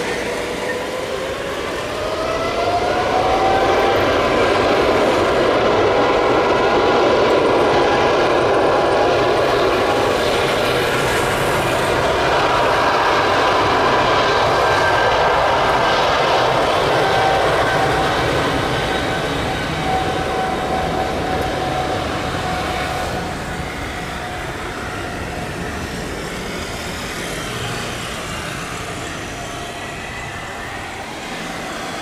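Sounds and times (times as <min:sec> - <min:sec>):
jet engine roar with whining: 0:00.0 - 0:32.0.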